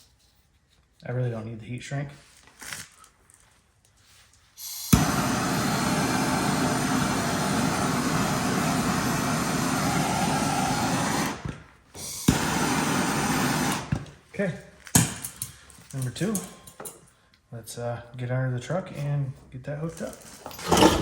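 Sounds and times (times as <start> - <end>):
heat gun whirring: 4.6 - 14.2.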